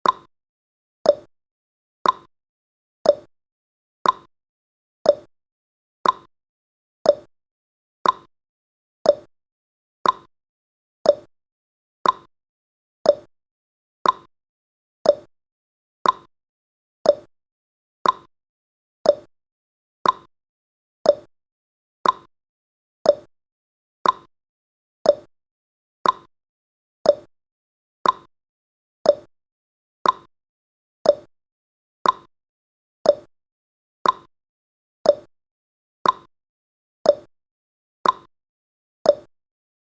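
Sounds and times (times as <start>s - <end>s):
timer ticking: 0.0s - 0.3s, 1.1s - 1.3s, 2.0s - 2.3s, 3.0s - 3.3s, 4.0s - 4.3s, 5.1s - 5.3s, 6.0s - 6.3s, 7.0s - 7.3s, 8.0s - 8.3s, 9.0s - 9.3s, 10.0s - 10.3s, 11.0s - 11.3s, 12.0s - 12.3s, 13.0s - 13.3s, 14.0s - 14.3s, 15.0s - 15.3s, 16.0s - 16.3s, 17.0s - 17.3s, 18.0s - 18.3s, 19.0s - 19.3s, 20.0s - 20.3s, 21.0s - 21.3s, 22.0s - 22.3s, 23.0s - 23.3s, 24.0s - 24.3s, 25.0s - 25.3s, 26.0s - 26.3s, 27.0s - 27.3s, 28.0s - 28.3s, 29.0s - 29.3s, 30.0s - 30.3s, 31.0s - 31.3s, 32.0s - 32.3s, 33.0s - 33.3s, 34.0s - 34.3s, 35.0s - 35.3s, 36.0s - 36.3s, 37.1s - 37.3s, 38.0s - 38.3s, 39.1s - 39.3s.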